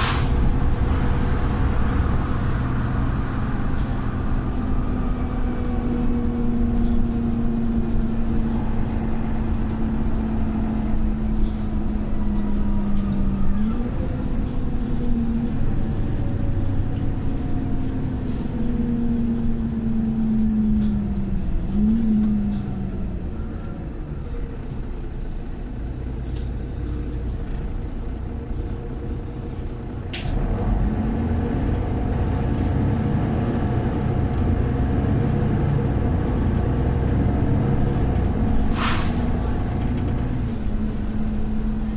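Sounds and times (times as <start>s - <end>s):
short air hiss: 0.0s - 0.4s, 38.7s - 39.4s
sharp air release: 0.0s - 0.5s, 38.6s - 39.5s
bus diesel engine: 0.0s - 41.9s.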